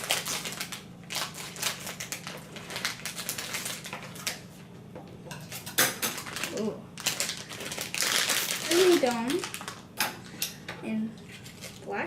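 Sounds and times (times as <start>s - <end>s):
wrapper crackling and rustling: 0.0s - 4.5s, 5.6s - 10.0s, 11.3s - 12.0s.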